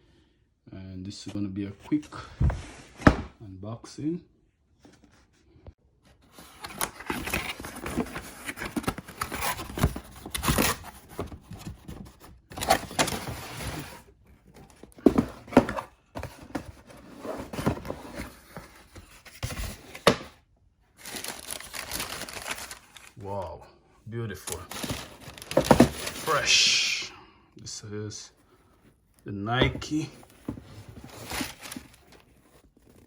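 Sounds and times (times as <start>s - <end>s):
paper rustling and crinkling: 6.2s - 20.4s, 21.0s - 23.2s, 24.4s - 26.8s, 29.6s - 33.0s
knocks and thunks on cardboard box: 14.9s - 20.3s, 24.8s - 26.2s.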